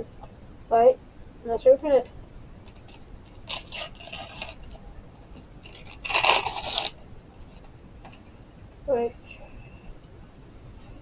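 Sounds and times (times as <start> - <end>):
packet being torn open: 2.7 - 4.8, 5.6 - 7.0.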